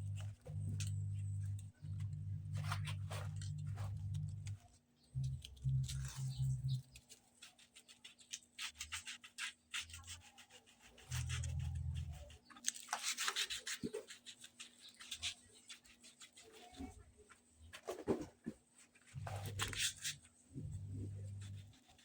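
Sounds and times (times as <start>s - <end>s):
low hum bursts: 0.0s - 4.6s, 5.2s - 7.0s, 19.2s - 19.9s, 20.6s - 21.7s
hands rubbing and scraping pipe: 19.0s - 22.0s.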